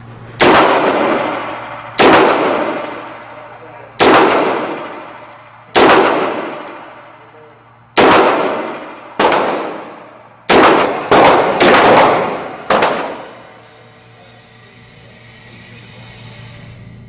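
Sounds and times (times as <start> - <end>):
echoing gunshots: 0.4 - 3.4, 4.0 - 7.2, 8.0 - 13.5.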